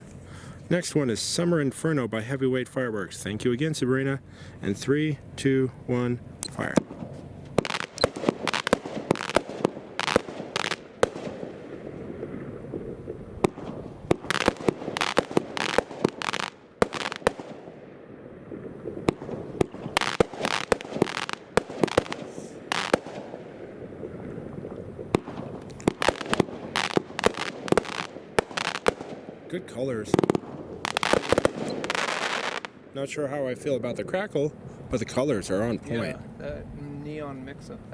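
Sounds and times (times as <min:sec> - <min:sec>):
firework launch thumps: 0:06.4 - 0:11.4, 0:30.2 - 0:32.7
firework aerial breaks: 0:06.4 - 0:17.7, 0:18.5 - 0:23.5, 0:24.1 - 0:29.4, 0:30.1 - 0:32.7
firework crackle: 0:06.4 - 0:29.5, 0:30.1 - 0:32.8.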